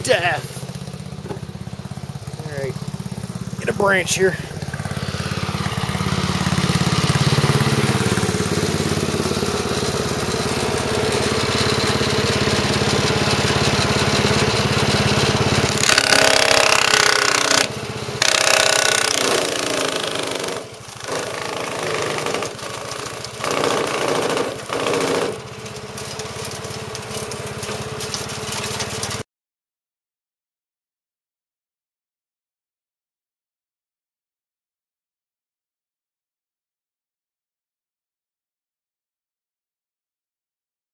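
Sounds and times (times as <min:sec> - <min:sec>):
chipper grinding branch: 0:00.0 - 0:29.2
wood chipper engine running: 0:00.0 - 0:29.2.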